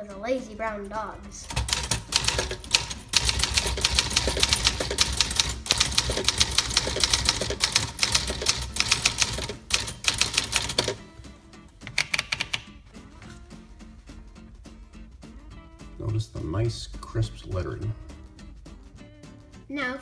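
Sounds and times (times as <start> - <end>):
background music: 0.0 - 20.0
manual typewriter keystrokes: 1.5 - 11.0, 11.8 - 12.8.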